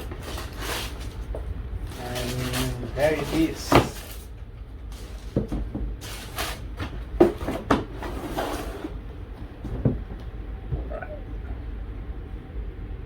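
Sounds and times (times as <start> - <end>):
shoebox knocks and bumps: 2.0 - 4.3, 5.0 - 8.1.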